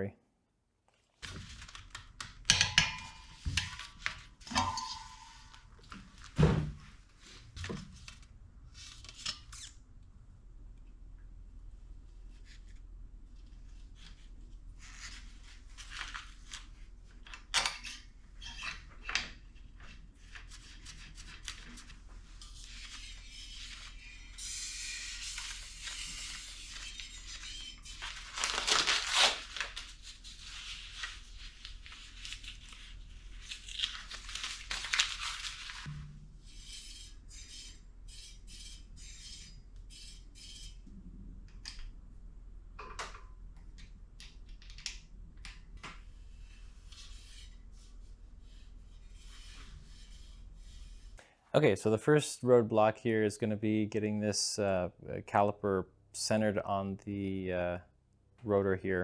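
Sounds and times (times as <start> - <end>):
rustling: 25.4 - 35.9.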